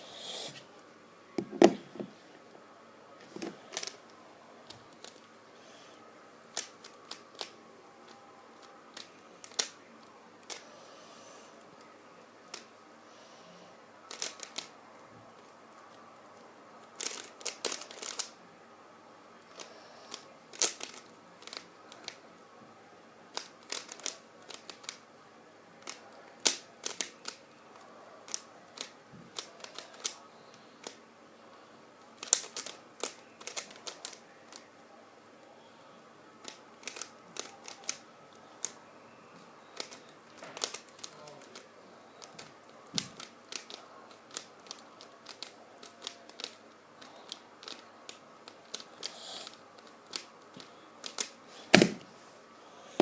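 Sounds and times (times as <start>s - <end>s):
puzzle cube plastic clicks: 6.5s - 8.2s, 8.9s - 9.8s, 14.1s - 14.7s, 17.0s - 18.4s, 19.5s - 22.2s, 23.3s - 25.0s, 25.8s - 27.4s, 32.2s - 34.6s, 36.4s - 38.0s, 39.8s - 41.6s, 42.2s - 52.0s.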